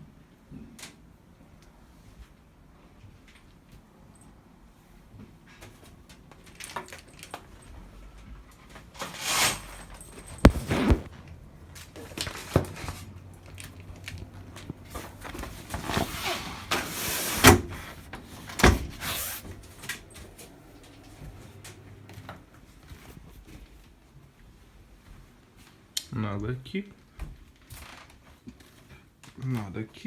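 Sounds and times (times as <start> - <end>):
rustling and handling noise: 4.8 - 26.0
doors and cupboards opening and shutting: 8.8 - 23.2.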